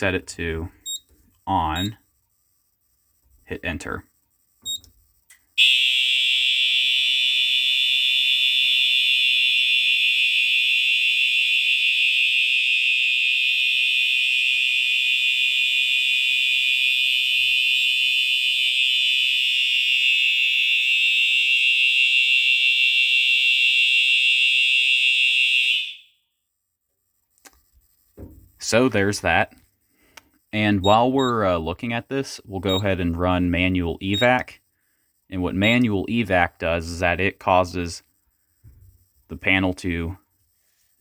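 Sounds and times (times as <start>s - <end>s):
fire alarm horn tone: 5.6s - 26.3s, 30.8s - 31.4s, 32.6s - 33.0s, 34.2s - 34.4s, 35.6s - 35.9s.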